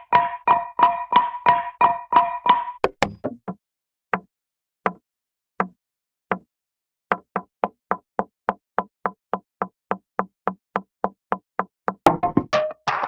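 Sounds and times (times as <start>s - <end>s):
cartoon wood knocks: 11.9s - 13.0s.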